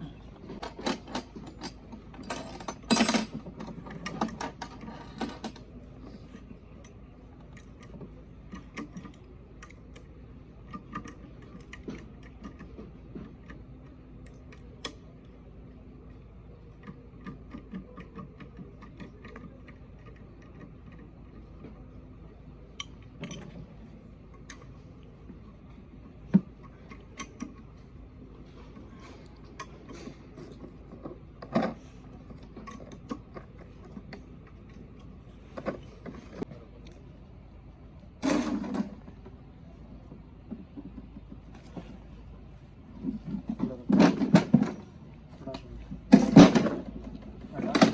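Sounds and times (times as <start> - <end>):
faint steady hum: 0.0 - 47.9
metal parts clattering: 0.5 - 5.6, 46.1 - 47.9
metal clinks and knocks: 0.5 - 5.7, 45.5 - 47.9.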